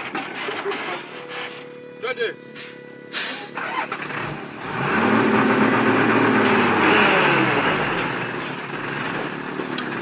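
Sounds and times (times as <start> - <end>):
vehicle engine revving: 3.5 - 10.0.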